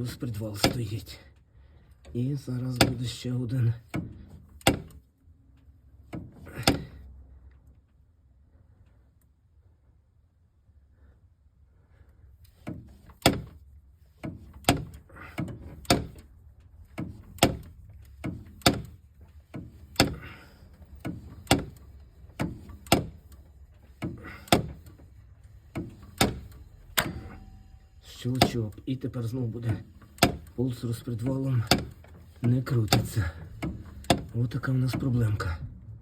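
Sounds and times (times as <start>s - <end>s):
engine metallic clicks: 0.0s - 1.2s, 2.0s - 7.0s, 12.4s - 35.6s.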